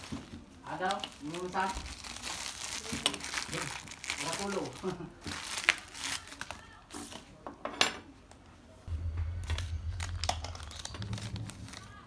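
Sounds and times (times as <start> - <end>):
packaging crinkling: 0.0 - 6.8
low steady hum: 8.9 - 12.0.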